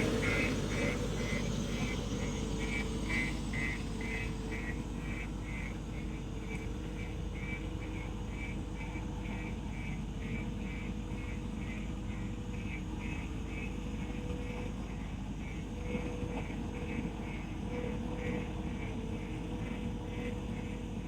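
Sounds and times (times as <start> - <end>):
faint high pulsing sound: 0.0 - 6.1
heavy diesel machinery rumbling: 0.0 - 6.2.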